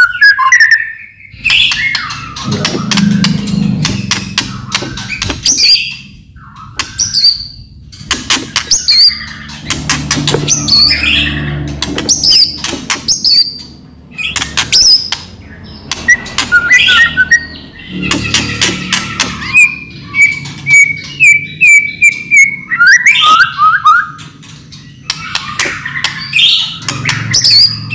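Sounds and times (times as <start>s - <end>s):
bird whistled notes: 16.1s - 24.2s.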